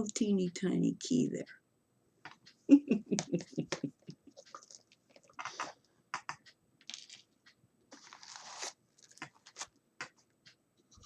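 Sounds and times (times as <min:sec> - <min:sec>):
rustling scrape: 0:07.9 - 0:09.7.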